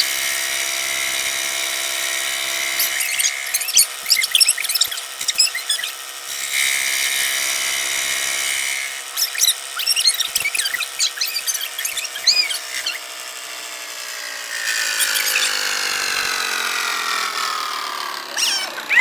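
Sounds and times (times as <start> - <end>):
small power tool motor running: 0.0 - 19.0
squeaky rubbing chirps: 2.8 - 6.0, 9.1 - 13.0, 14.9 - 16.2, 18.4 - 19.0.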